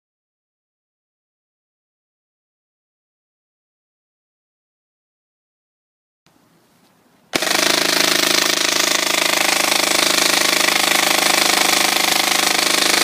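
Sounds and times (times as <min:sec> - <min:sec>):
electric airsoft gun full-auto burst: 0:07.3 - 0:13.0.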